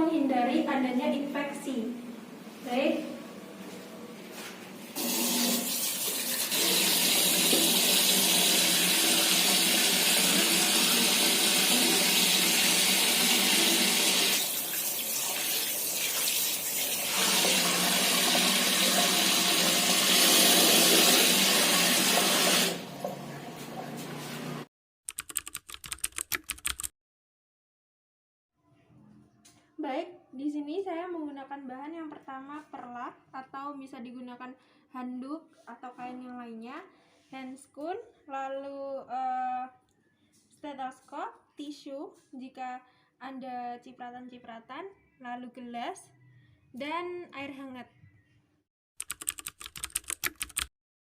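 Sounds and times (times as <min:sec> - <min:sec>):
tap water running into sink: 0:05.0 - 0:23.2.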